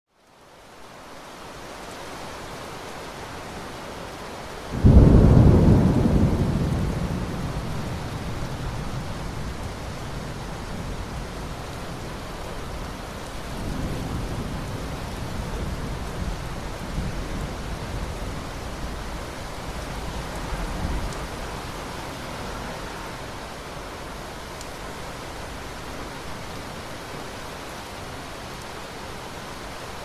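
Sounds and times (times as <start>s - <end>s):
rain hissing: 0.7s - 30.0s
thunder rumbling: 4.8s - 12.9s.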